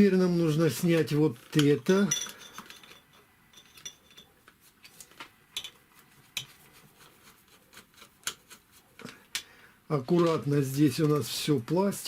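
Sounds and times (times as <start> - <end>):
clicks and taps of hard parts: 8.2 - 9.5.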